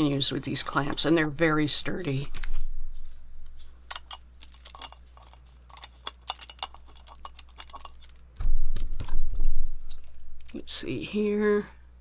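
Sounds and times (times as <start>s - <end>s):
steady low hum: 0.0s - 12.0s
low thudding handling rumble: 7.9s - 11.0s.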